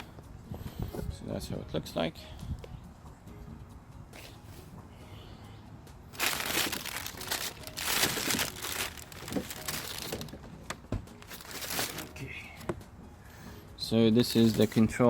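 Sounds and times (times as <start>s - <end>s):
packaging crinkling and rustling: 6.1s - 12.2s, 14.2s - 14.8s.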